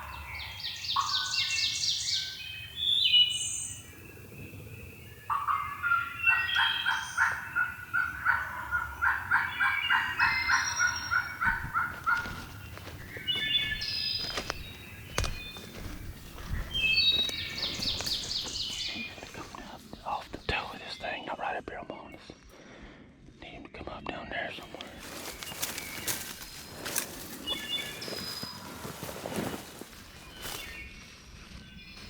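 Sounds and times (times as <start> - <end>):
songbirds chirping: 0.0 - 32.0
turkey yelping: 5.3 - 12.9.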